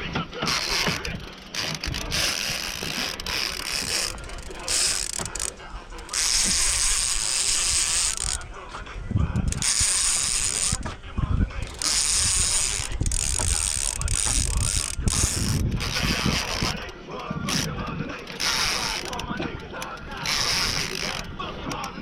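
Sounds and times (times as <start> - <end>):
fishing reel clicking and ratcheting: 0.4 - 8.6, 9.4 - 10.9, 11.6 - 22.0.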